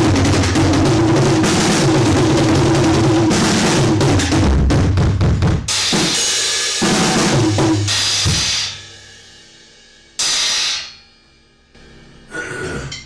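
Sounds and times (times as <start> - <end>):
cymbal crashes: 5.7 - 11.7.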